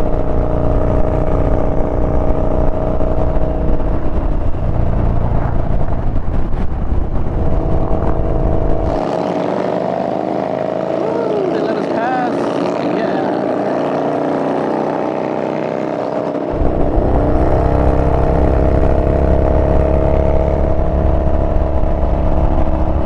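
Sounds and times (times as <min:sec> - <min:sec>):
wind rumble on microphone: 0:00.0 - 0:09.4, 0:15.0 - 0:23.0
motorcycle engine running: 0:10.5 - 0:23.0.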